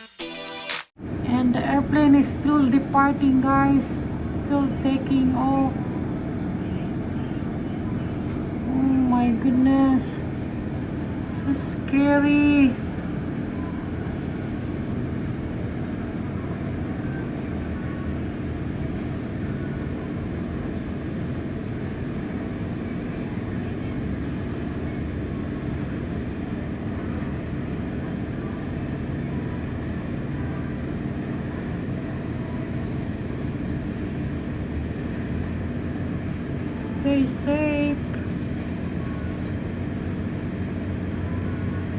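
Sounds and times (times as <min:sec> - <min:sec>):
jet engines rumbling: 0:01.0 - 0:29.9
faint high whine: 0:01.0 - 0:41.9.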